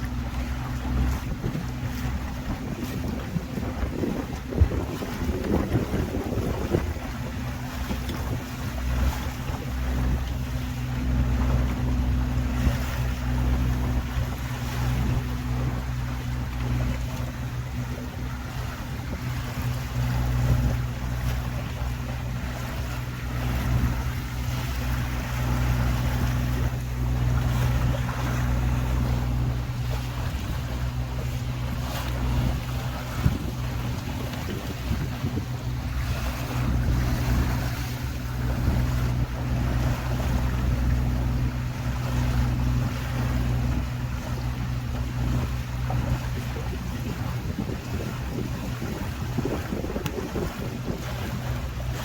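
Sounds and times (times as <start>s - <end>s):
boat engine droning: 0.0s - 52.0s
wind noise: 0.9s - 10.3s, 17.8s - 40.8s, 45.2s - 52.0s.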